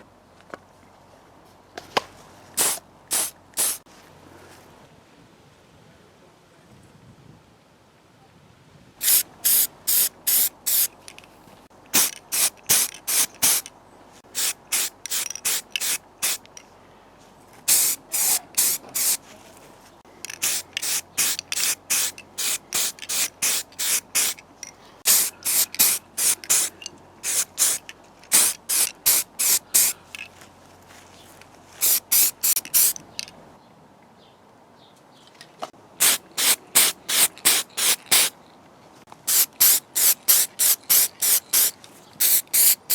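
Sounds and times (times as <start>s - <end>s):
aerosol spray hissing bursts: 2.6s - 3.8s, 9.0s - 10.9s, 11.9s - 13.7s, 14.3s - 16.4s, 17.7s - 19.2s, 20.4s - 24.4s, 25.1s - 30.0s, 31.8s - 33.0s, 36.0s - 38.3s, 39.3s - 42.9s.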